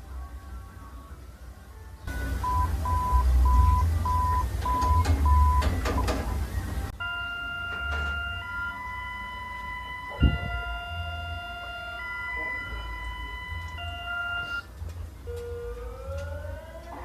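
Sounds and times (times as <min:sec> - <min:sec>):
multi-pitch alert tone: 0:07.0 - 0:14.6.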